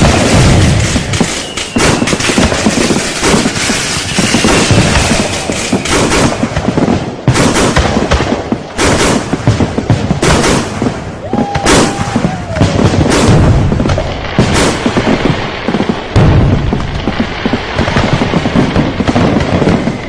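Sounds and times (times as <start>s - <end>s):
fireworks bangs and crackles: 0.0s - 20.0s
whistles of rising shells: 1.3s - 2.4s, 3.9s - 6.4s.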